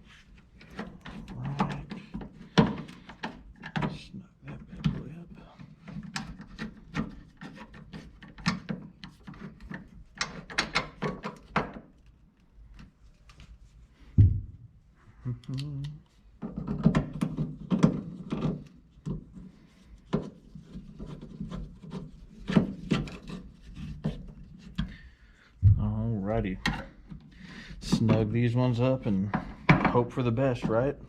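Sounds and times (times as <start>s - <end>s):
heavy knock: 14.2s - 14.8s, 25.6s - 26.0s.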